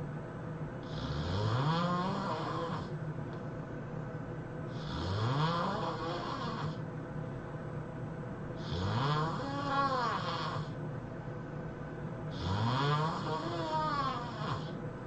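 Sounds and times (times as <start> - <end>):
person snoring: 0.8 - 3.0, 4.7 - 6.8, 8.6 - 10.8, 12.3 - 14.8.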